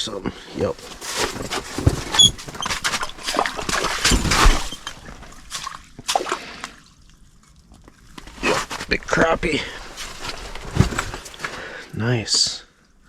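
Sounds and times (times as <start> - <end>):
water splashing and sloshing: 0.4 - 12.0
knocks and handling noise: 0.6 - 5.8, 7.8 - 11.7.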